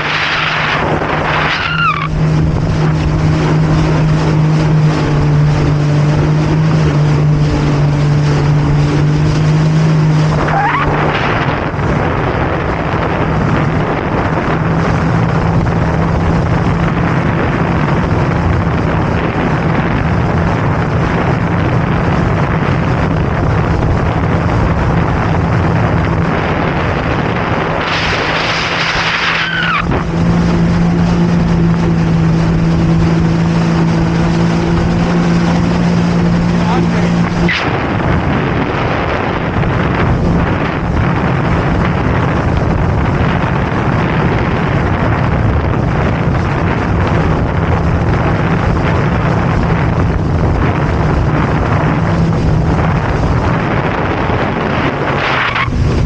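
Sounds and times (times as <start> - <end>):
loud rush of water: 0.0 - 15.6, 25.3 - 56.0
jet ski engine running: 0.0 - 56.0
whistling glides: 0.1 - 2.3, 27.8 - 30.0.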